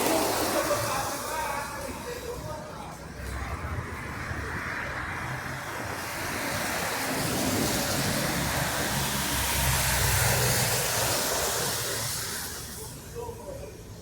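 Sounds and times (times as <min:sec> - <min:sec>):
tyres hissing through water: 0:00.0 - 0:02.5, 0:05.9 - 0:13.2.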